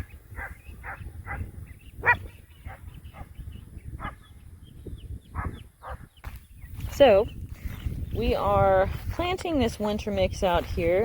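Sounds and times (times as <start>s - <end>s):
wind rumble on microphone: 0.0s - 11.0s
dog barking: 0.4s - 3.3s, 5.4s - 6.1s.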